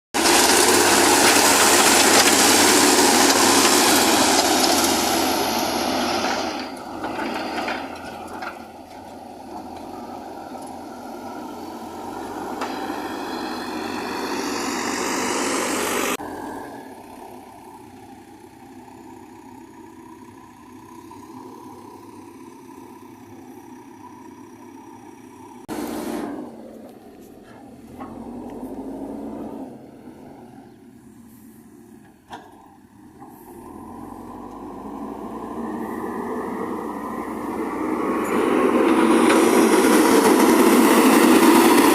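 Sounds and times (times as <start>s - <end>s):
heavy vehicle engine running: 0.2s - 41.9s
rising whine: 11.2s - 16.8s.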